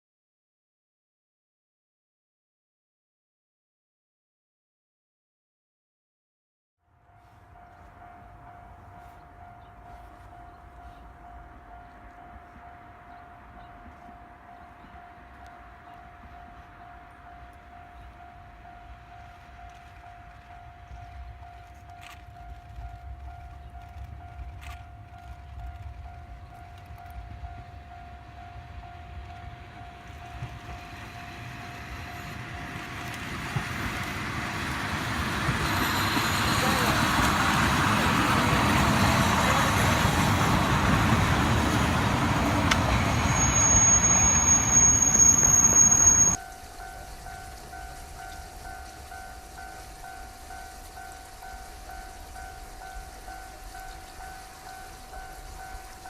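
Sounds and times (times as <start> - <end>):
diesel railcar approaching: 6.8 - 56.0
level-crossing alarm dinging: 40.0 - 56.0.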